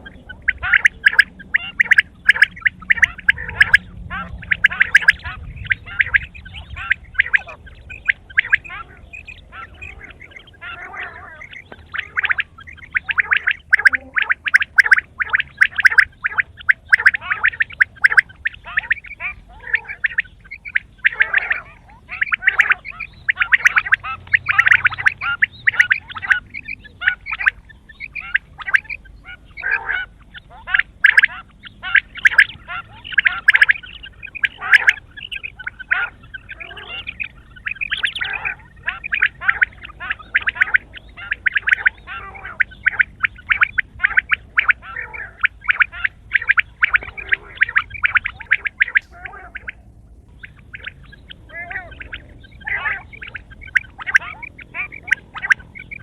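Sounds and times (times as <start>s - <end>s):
quail calling: 0.0s - 56.0s.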